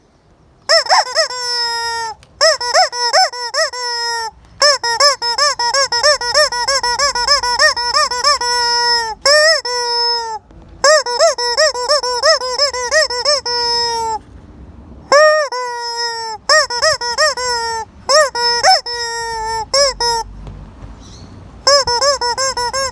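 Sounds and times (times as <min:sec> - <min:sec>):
toy chicken squeaking: 0:00.7 - 0:14.2, 0:15.1 - 0:20.3, 0:21.0 - 0:22.9.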